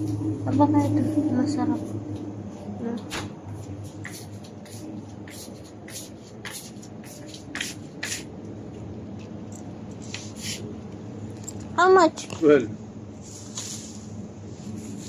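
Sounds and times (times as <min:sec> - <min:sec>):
low hum: 0:00.0 - 0:04.1.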